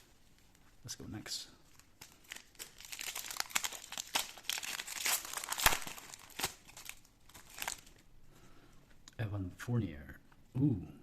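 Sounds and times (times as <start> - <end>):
plastic wrapper tearing and crinkling: 1.7 - 8.0.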